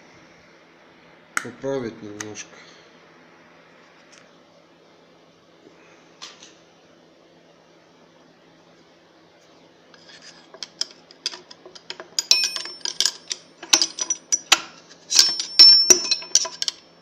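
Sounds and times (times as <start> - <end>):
metal gear parts knocking and clinking: 10.6 - 16.8
ringing metallic taps: 11.3 - 16.8.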